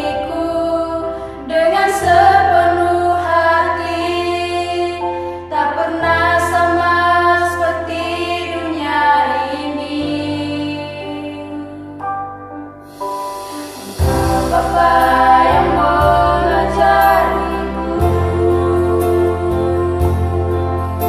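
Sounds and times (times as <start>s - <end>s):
sustained low accompaniment: 13.0s - 21.0s.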